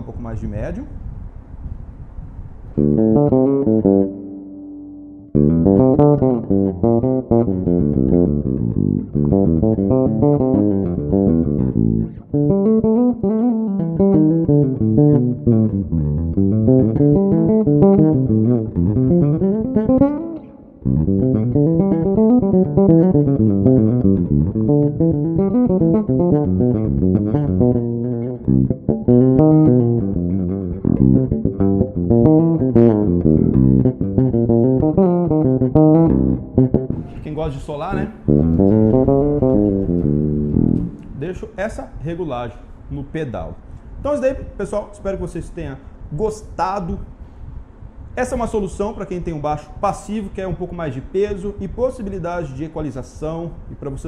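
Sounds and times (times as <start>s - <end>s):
electric bass melodic lines: 2.7s - 41.6s.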